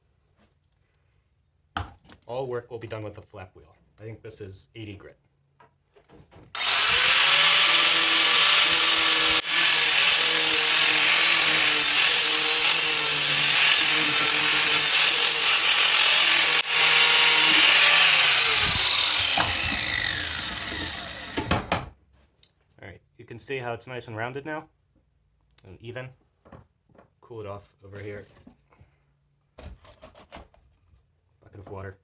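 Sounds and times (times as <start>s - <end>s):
flap wheel grinding steel: 6.6s - 21.8s.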